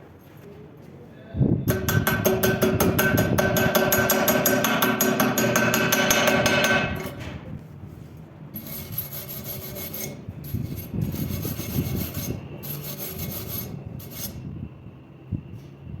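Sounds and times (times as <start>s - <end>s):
scraping strokes on metal: 1.7s - 7.4s, 8.5s - 14.5s.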